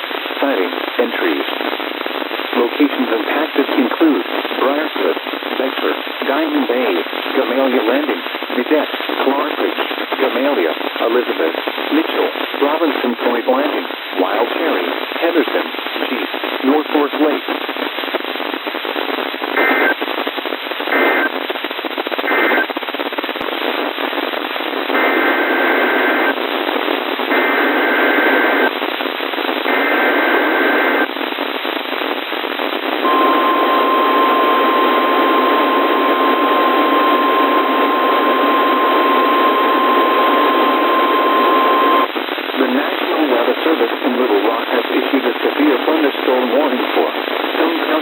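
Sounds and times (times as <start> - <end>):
radio static: 0.0 - 17.6, 19.0 - 48.0
buzzy two-tone data squawks: 19.6 - 20.0, 20.9 - 21.3, 22.3 - 22.7, 24.9 - 26.4, 27.3 - 28.7, 29.7 - 31.1, 33.0 - 42.1
steady warning alarm tone: 25.0 - 26.4, 27.3 - 28.7, 29.7 - 31.0, 33.0 - 42.1.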